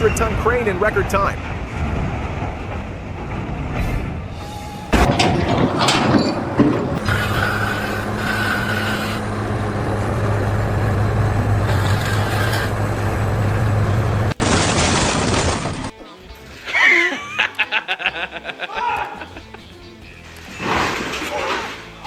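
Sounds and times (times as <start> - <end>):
heavy engine running: 0.2 - 15.9.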